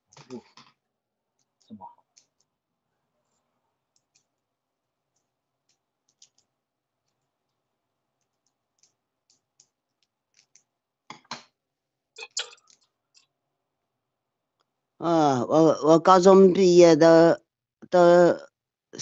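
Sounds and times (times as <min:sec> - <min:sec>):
faint irregular clicks: 0:00.1 - 0:02.6, 0:03.9 - 0:04.5, 0:05.1 - 0:07.6, 0:08.2 - 0:11.5, 0:12.2 - 0:13.4.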